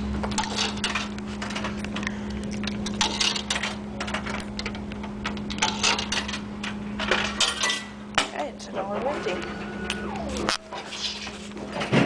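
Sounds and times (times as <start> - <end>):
vending machine low hum: 0.0 - 12.0.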